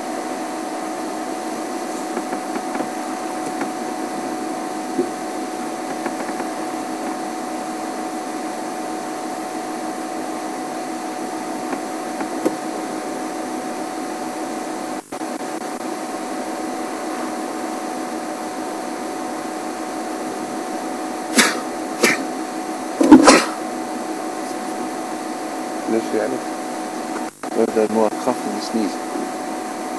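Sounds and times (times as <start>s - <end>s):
motor-like hum: 0.0s - 29.9s
loud knocks: 2.1s - 3.8s, 5.8s - 7.2s.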